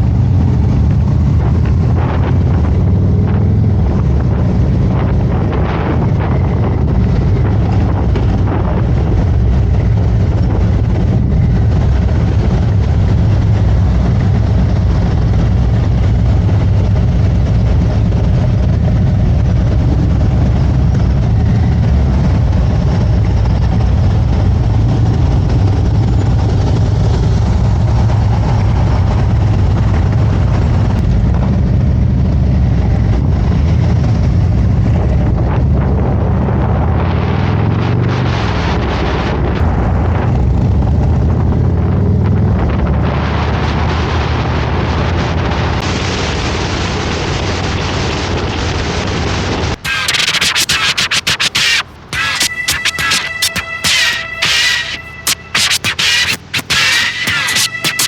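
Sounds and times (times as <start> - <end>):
motorcycle engine running: 0.0 - 45.8.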